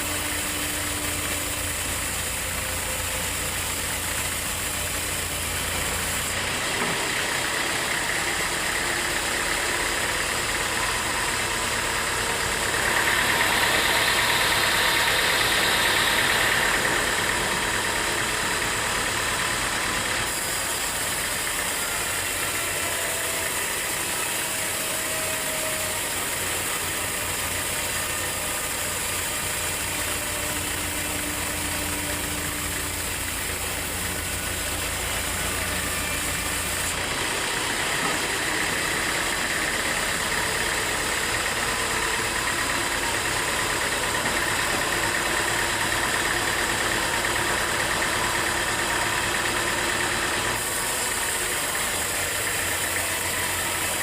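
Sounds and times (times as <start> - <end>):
sawmill machinery running: 0.0 - 54.0
high saw noise: 7.2 - 45.7.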